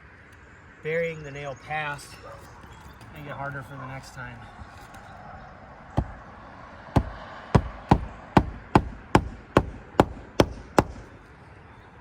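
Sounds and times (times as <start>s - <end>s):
hatchet hammering roofing nails: 5.9s - 6.2s, 7.0s - 11.2s.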